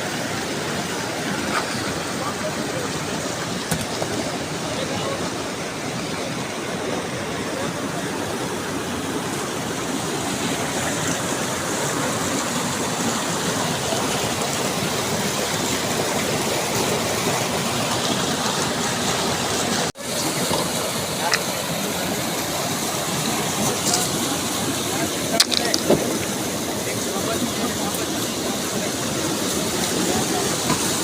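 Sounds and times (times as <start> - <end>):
mountain stream rushing: 0.0 - 31.0.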